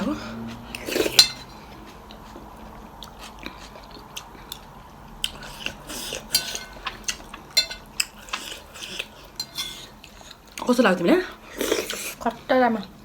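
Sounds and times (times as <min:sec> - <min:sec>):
soft eating sounds: 0:00.0 - 0:13.0
utensils clinking against bowls: 0:00.6 - 0:01.6, 0:06.0 - 0:09.9.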